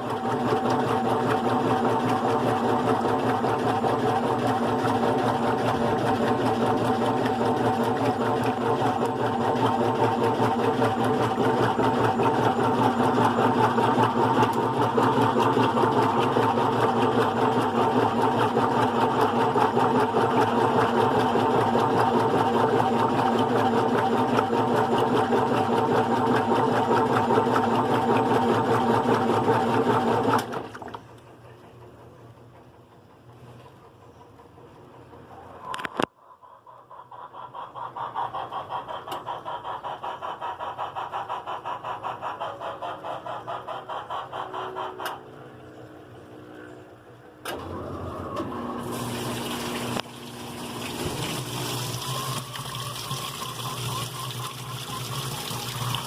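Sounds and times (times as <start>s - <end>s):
washing machine humming and churning: 0.0s - 56.0s.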